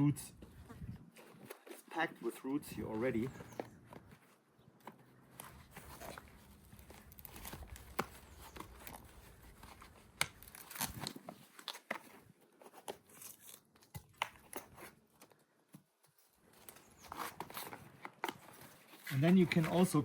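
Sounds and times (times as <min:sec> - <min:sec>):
plastic plant pot tearing: 0:05.4 - 0:12.1.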